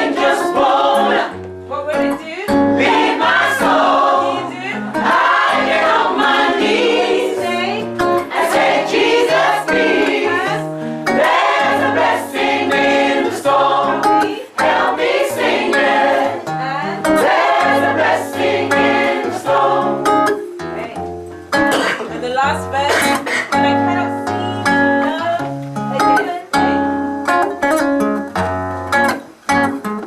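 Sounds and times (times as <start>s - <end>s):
gospel choir singing: 0.0s - 1.5s, 2.7s - 20.5s.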